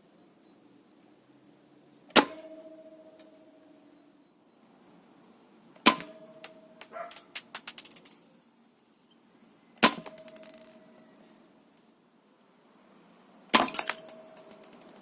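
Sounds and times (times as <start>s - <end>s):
airsoft rifle shot crack: 5.8s - 6.3s, 13.5s - 14.9s.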